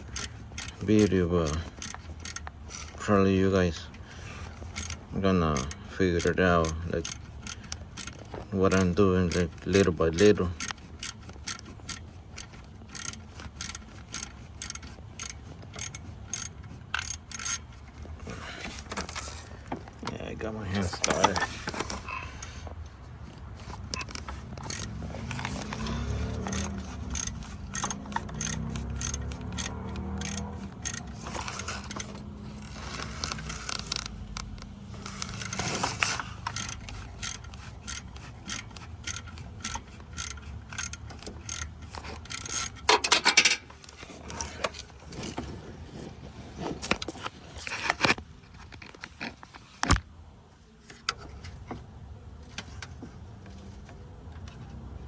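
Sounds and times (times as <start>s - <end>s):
socket ratchet clicking: 0.0s - 19.0s, 20.7s - 43.9s.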